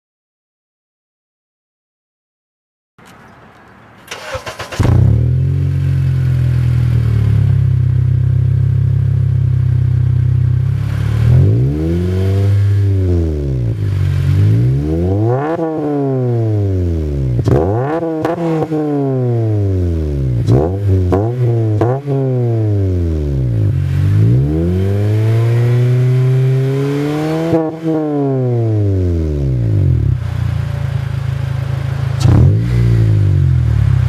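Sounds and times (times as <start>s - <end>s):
car engine idling: 3.0s - 11.3s, 29.6s - 32.3s
car engine starting: 3.0s - 34.0s
car engine revving: 4.0s - 34.0s.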